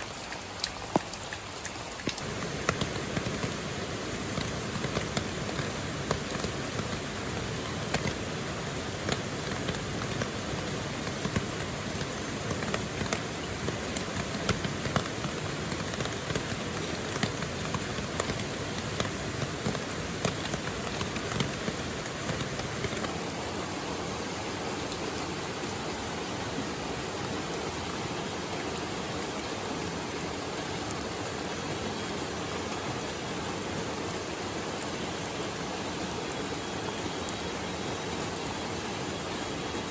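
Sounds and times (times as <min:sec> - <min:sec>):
raindrops ticking close by: 0:00.0 - 0:29.4
steady rain falling: 0:00.0 - 0:39.9.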